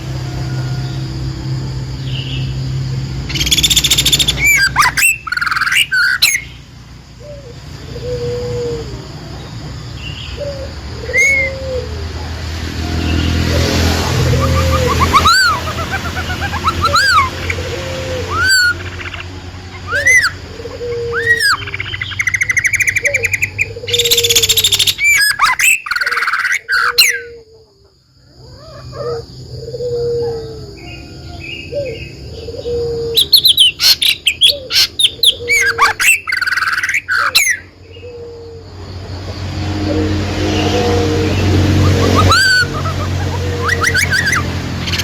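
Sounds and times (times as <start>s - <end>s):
songbirds chirping and singing: 0.0s - 45.0s.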